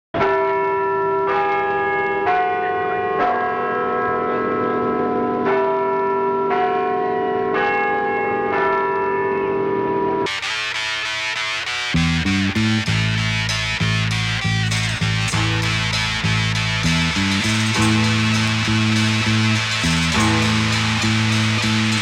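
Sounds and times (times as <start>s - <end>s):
church bells pealing: 0.2s - 22.0s
electric guitar music: 10.2s - 22.0s.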